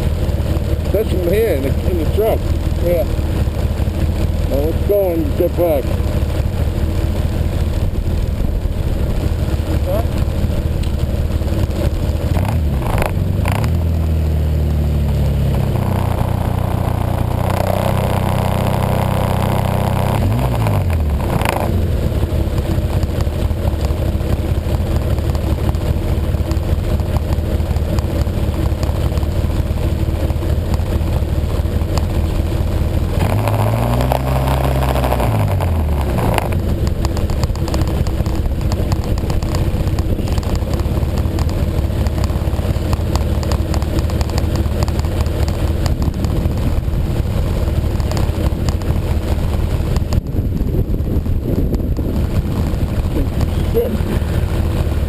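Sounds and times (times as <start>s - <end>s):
snowmobile engine running: 0.0s - 55.0s.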